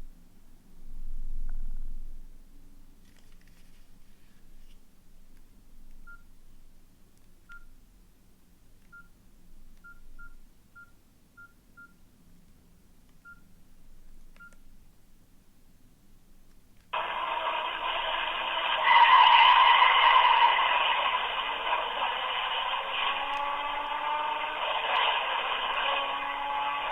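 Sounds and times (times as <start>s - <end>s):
keypad beeps: 7.5s - 7.7s, 8.9s - 9.1s, 9.8s - 12.0s, 13.2s - 13.5s, 14.3s - 14.7s
loud abrupt sound: 17.0s - 26.9s.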